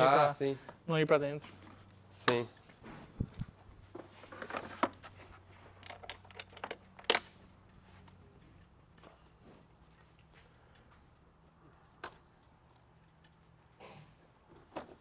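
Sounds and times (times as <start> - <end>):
air filter clips snapping: 2.2 - 2.6, 7.0 - 7.4.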